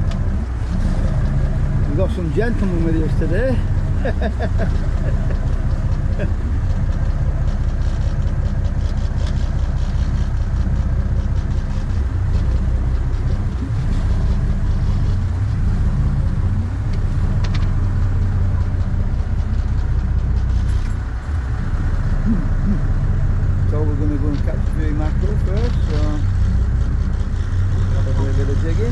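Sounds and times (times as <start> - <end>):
boat engine droning: 0.0 - 28.9.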